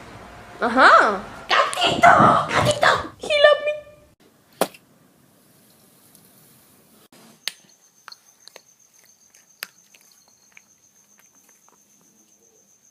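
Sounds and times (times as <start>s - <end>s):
cricket chirring: 7.2s - 12.9s.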